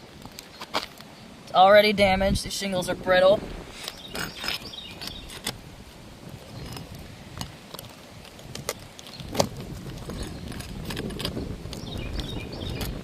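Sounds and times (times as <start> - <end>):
shingles tearing: 0.2 - 1.1, 3.7 - 5.6, 6.3 - 13.0
metal tool scraping on shingles: 3.7 - 5.6, 6.3 - 13.0.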